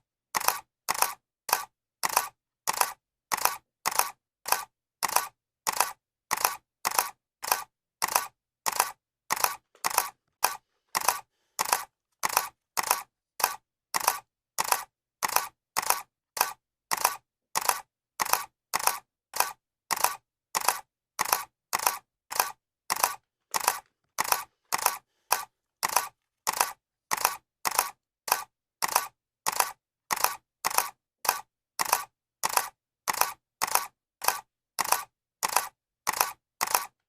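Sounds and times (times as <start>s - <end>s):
camera shutter clicking: 0.4s - 37.0s.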